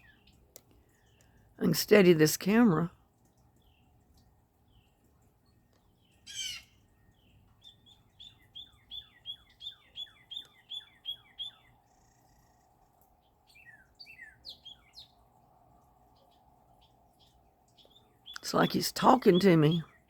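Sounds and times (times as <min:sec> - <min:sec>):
bird singing whistled notes: 0:07.6 - 0:12.6, 0:13.5 - 0:15.2.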